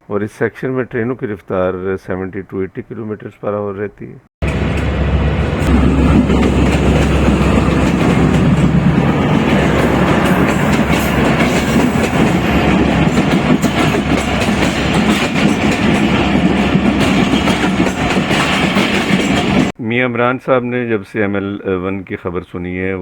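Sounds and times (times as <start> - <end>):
wheels clattering over rails: 4.4 - 19.7
train rumbling: 4.4 - 19.8.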